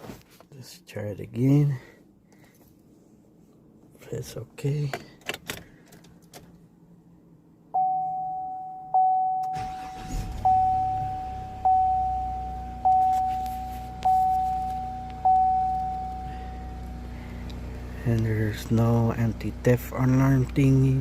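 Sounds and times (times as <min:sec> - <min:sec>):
dashboard warning chime: 0:07.7 - 0:17.0
engine cranking and idling: 0:09.5 - 0:13.0.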